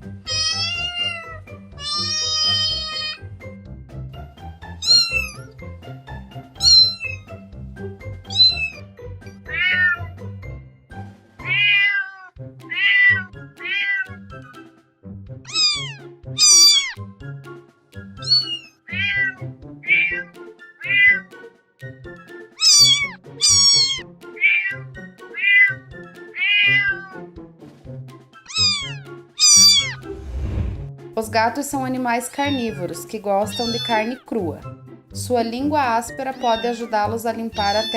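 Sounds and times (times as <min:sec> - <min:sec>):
cat meowing: 0:00.3 - 0:03.3, 0:04.8 - 0:05.5, 0:06.6 - 0:07.3, 0:08.3 - 0:08.8, 0:09.4 - 0:10.2, 0:11.4 - 0:14.3, 0:15.5 - 0:17.0, 0:18.2 - 0:21.4, 0:22.6 - 0:27.3, 0:28.4 - 0:30.1, 0:32.4 - 0:34.3, 0:36.4 - 0:36.9, 0:37.6 - 0:37.9.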